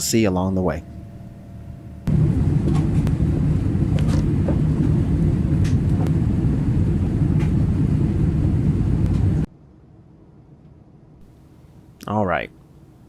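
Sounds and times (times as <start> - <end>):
jet engine cabin rumble: 0.0 - 9.5.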